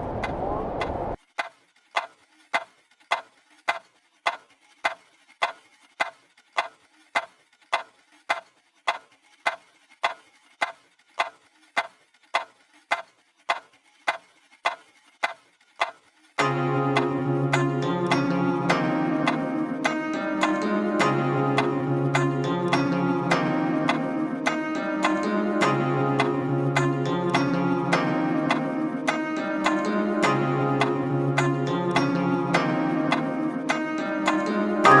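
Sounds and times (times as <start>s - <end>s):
steady clock ticking: 0.2s - 16.4s.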